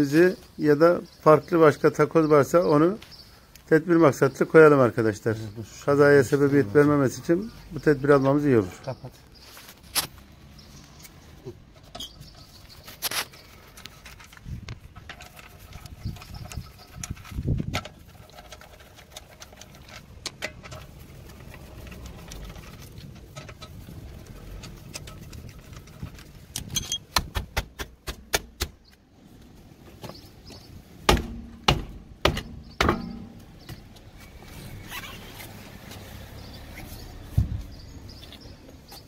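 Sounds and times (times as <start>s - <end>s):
hand tools clicking on metal: 11.8s - 28.5s.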